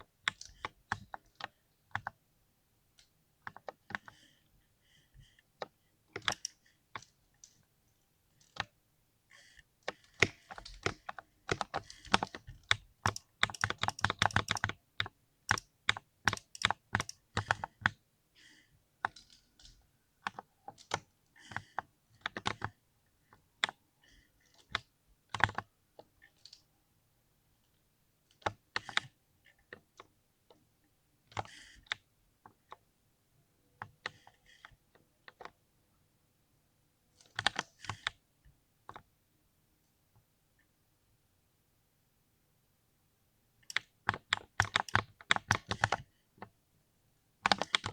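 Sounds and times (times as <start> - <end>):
mechanical keyboard key clicks: 6.2 - 6.6, 10.2 - 14.8, 15.5 - 17.6.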